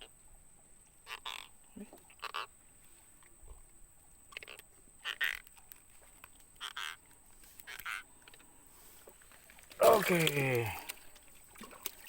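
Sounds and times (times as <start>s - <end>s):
frogs croaking: 1.0s - 2.7s, 4.2s - 5.8s, 6.6s - 8.7s.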